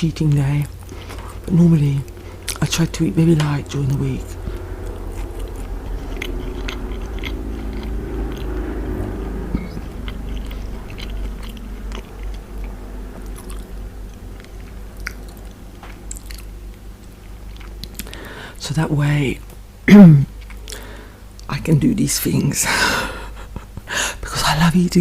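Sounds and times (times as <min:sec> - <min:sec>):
person chewing food: 0:00.6 - 0:18.5, 0:20.4 - 0:21.5.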